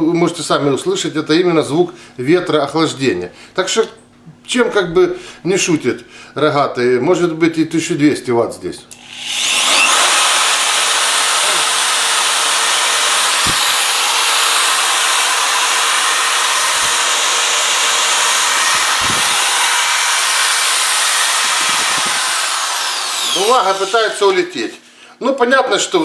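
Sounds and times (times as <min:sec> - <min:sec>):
electric drill whirring: 0:08.9 - 0:24.5.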